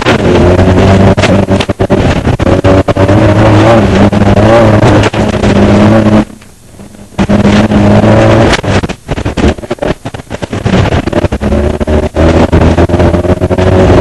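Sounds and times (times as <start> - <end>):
race car engine under load: 0.0 - 14.0.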